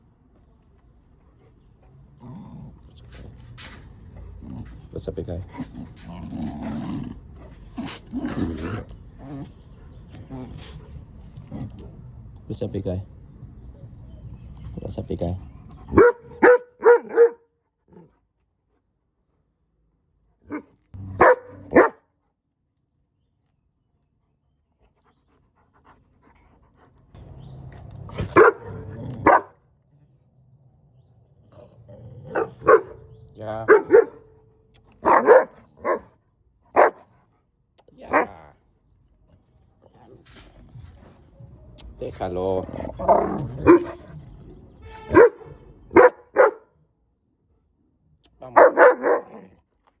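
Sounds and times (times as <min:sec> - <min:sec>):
low grumbling noise: 0:00.4 - 0:16.0, 0:20.8 - 0:21.8, 0:39.9 - 0:46.0
dog barking: 0:15.9 - 0:17.5, 0:20.5 - 0:22.0, 0:28.2 - 0:29.6, 0:32.3 - 0:34.3, 0:35.0 - 0:37.1, 0:38.1 - 0:38.4, 0:43.6 - 0:44.0, 0:45.1 - 0:46.8, 0:48.5 - 0:49.5.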